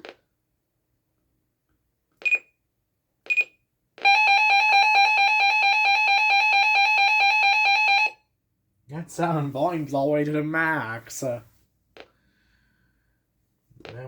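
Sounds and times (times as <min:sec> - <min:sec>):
key beeps: 0:02.2 - 0:02.5, 0:03.3 - 0:03.6.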